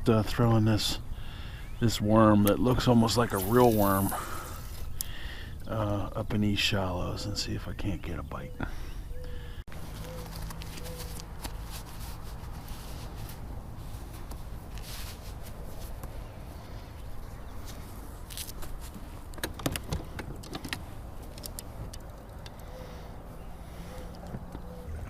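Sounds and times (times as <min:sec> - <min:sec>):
small clicks and knocks: 0:19.3 - 0:22.7.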